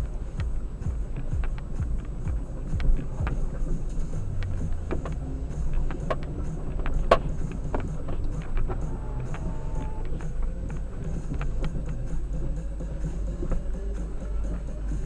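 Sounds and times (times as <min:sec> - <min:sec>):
knocks and rattles from bumps: 0:00.0 - 0:15.0
vehicle rumble on rough road: 0:00.0 - 0:15.0.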